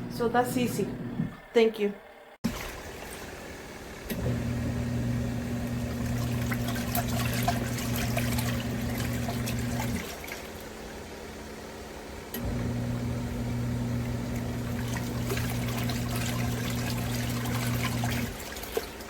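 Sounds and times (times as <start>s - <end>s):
washing machine motor hum: 0.0s - 19.0s
water swishing in tub: 2.4s - 4.5s, 5.5s - 11.2s, 14.0s - 19.0s.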